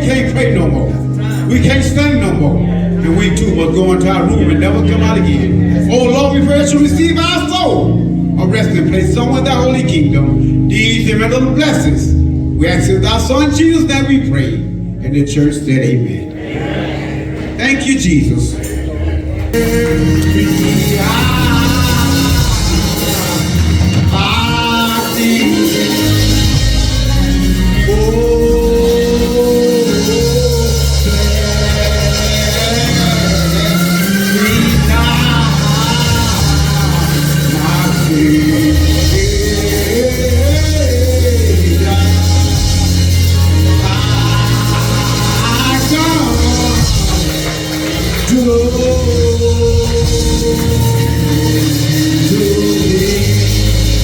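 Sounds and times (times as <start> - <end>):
steady bass notes: 0.0 - 54.0
person singing: 19.5 - 54.0.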